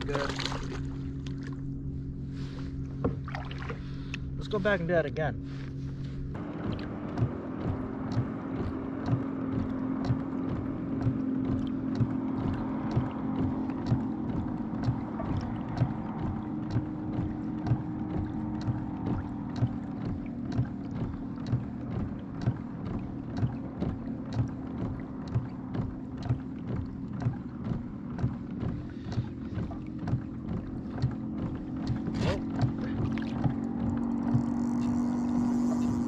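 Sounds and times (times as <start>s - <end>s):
boat motor hum: 0.0s - 36.0s
hull knocking on small waves: 0.0s - 36.0s.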